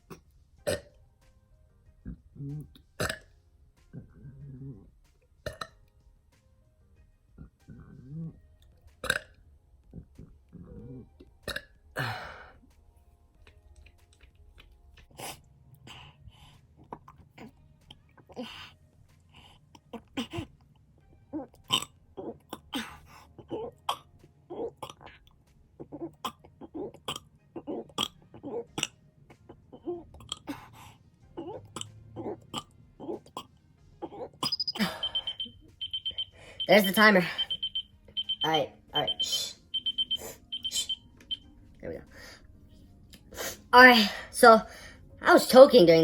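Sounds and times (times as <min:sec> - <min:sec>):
man burping: 0:02.4 - 0:03.3.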